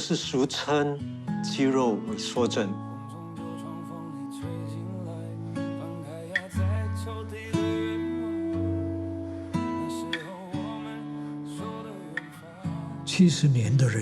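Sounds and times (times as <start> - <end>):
acoustic guitar chords: 0.0 - 14.0.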